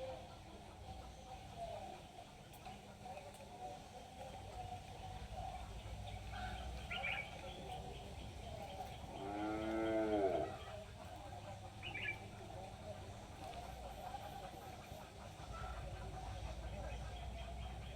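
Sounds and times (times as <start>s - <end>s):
drawn-out animal call: 9.0s - 12.3s.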